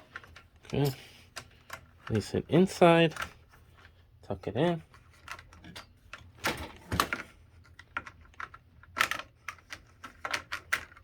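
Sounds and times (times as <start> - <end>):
cables clicking into plastic tray: 5.2 - 11.0.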